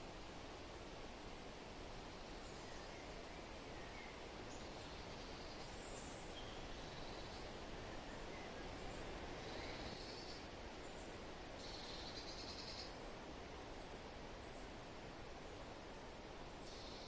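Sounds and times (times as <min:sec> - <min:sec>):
soft steady wind: 0:00.0 - 0:17.0
faint bird chirps: 0:02.4 - 0:13.0, 0:16.5 - 0:17.0.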